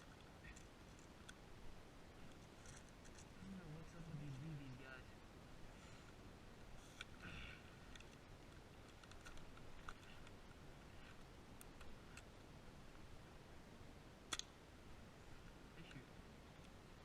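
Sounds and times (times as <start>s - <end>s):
sharp click: 14.3s - 14.6s.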